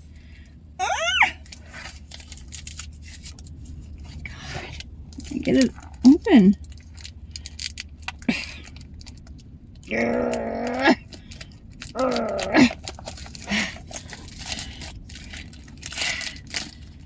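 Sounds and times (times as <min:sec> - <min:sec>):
woman groaning with effort: 0:00.8 - 0:01.4, 0:09.9 - 0:11.1, 0:12.0 - 0:12.8
plastic packaging crinkling: 0:01.3 - 0:09.5, 0:11.0 - 0:17.0.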